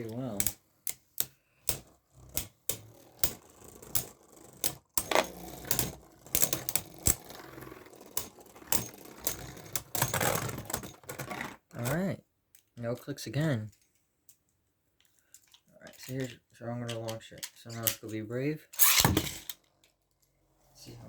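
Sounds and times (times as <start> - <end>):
spinning tops clashing: 18.8 - 19.6.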